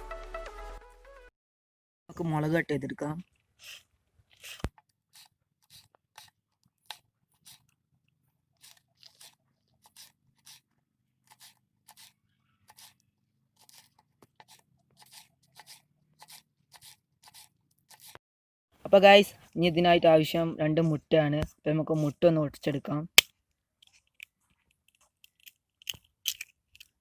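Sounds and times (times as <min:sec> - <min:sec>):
knife cutting on a cutting board: 0:04.4 - 0:07.7, 0:08.6 - 0:18.2.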